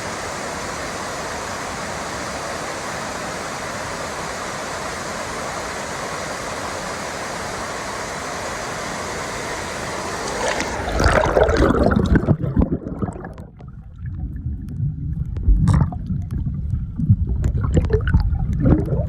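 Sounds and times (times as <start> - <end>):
waterfall rushing: 0.0 - 11.6
underwater gurgling and bubbling: 10.2 - 19.0.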